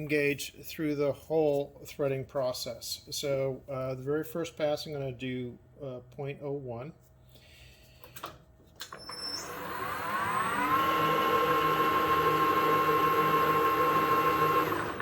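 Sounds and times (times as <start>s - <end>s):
metal lathe motor whining: 8.9s - 15.0s.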